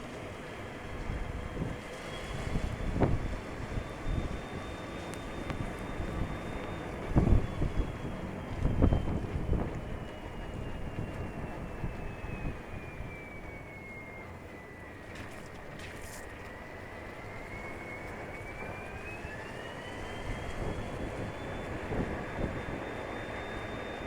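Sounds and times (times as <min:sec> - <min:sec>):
high whine: 0:00.0 - 0:24.0
ride vehicle rumble: 0:00.0 - 0:24.0.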